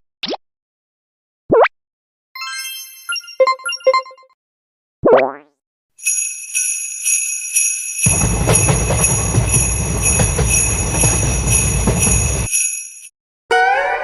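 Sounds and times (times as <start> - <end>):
level crossing warning bell: 6.1 - 13.1
train passing rumble: 8.1 - 12.5.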